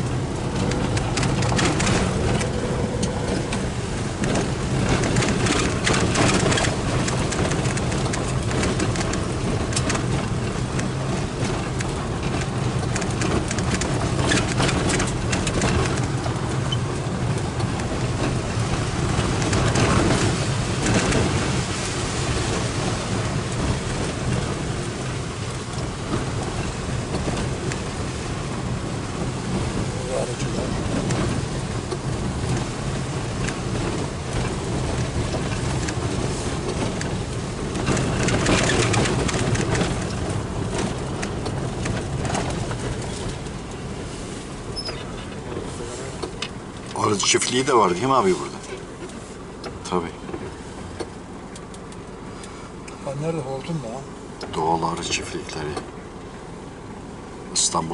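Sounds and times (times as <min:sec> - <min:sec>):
car engine and road hum: 0:00.0 - 0:57.9
tyres spattering on wet road: 0:00.0 - 0:57.9.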